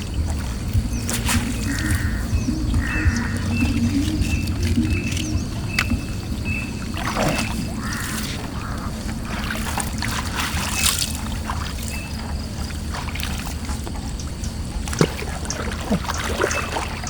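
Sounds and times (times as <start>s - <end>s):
low rumble: 0.0s - 9.3s
water splashing and dripping: 0.0s - 17.0s.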